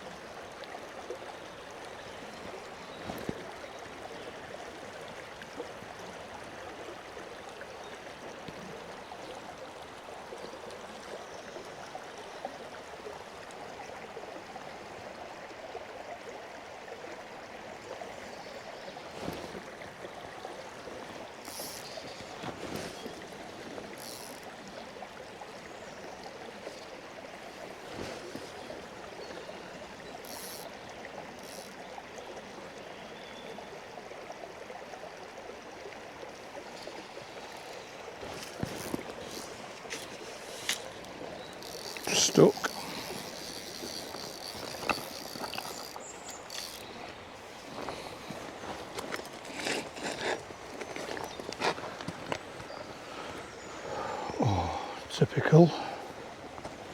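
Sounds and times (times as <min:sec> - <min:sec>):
river water rushing: 0:34.4 - 0:56.9.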